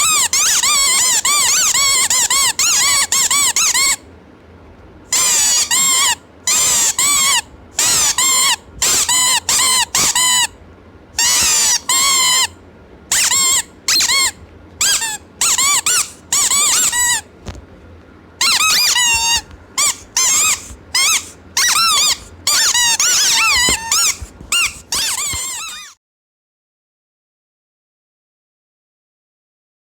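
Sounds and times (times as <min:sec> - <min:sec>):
squeaky toy squeaks: 0:00.0 - 0:04.0, 0:05.1 - 0:10.6, 0:11.2 - 0:17.3, 0:18.4 - 0:26.0.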